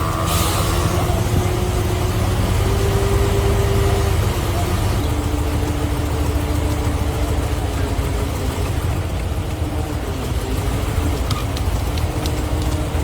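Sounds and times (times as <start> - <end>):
heavy machine engine rumbling: 0.0 - 13.0.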